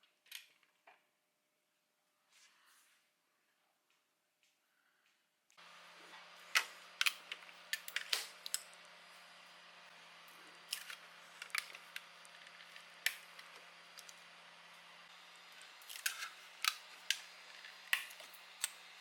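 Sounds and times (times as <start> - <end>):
faint steady hum: 1.0 - 19.0
plastic parts clicking and tapping: 6.6 - 8.7, 10.7 - 14.2, 15.8 - 18.9.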